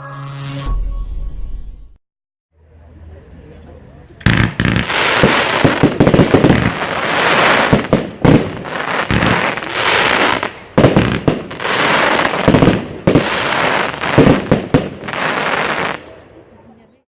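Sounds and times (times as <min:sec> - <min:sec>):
firework crackling: 0:04.2 - 0:16.2.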